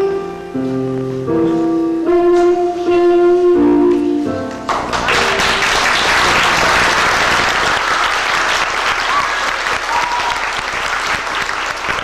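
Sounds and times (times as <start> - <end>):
piano and brass music: 0.0 - 8.6
audience applauding: 4.7 - 12.0.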